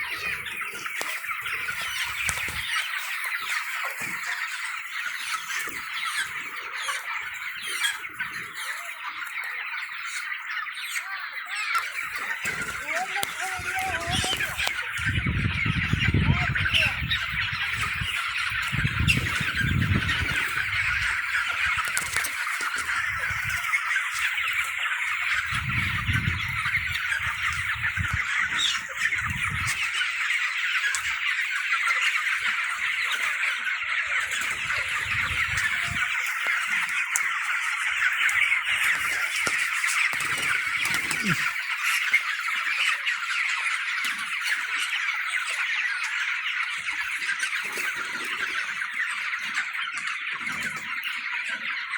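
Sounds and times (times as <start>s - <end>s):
chickens squawking: 0.0s - 51.9s.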